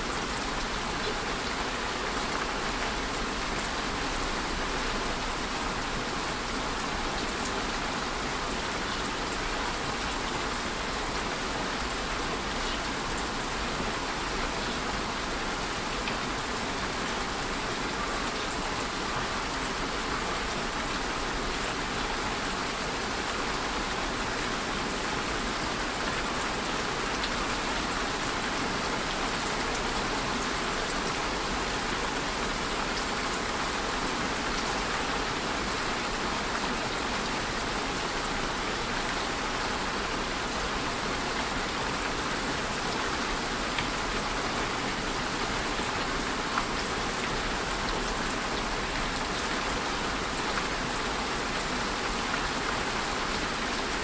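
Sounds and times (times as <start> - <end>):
steady rain hiss: 0.0 - 54.0.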